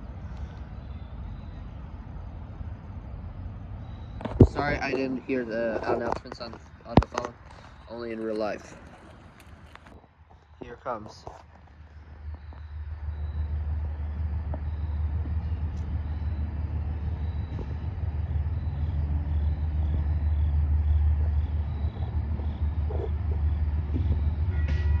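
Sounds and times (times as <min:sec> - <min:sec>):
approaching train rumble: 0:11.8 - 0:25.0.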